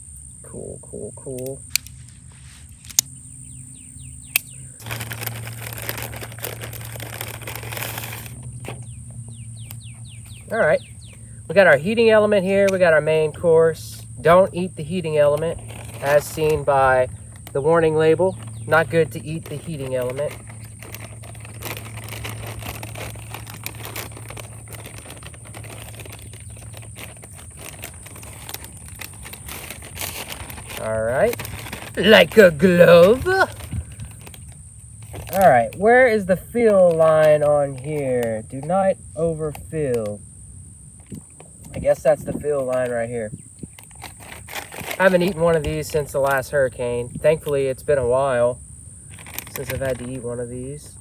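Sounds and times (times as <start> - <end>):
faint bird chirps: 0.3 - 5.0, 8.4 - 12.0
plastic packaging crinkling: 3.9 - 40.2, 41.0 - 46.5, 49.0 - 50.7.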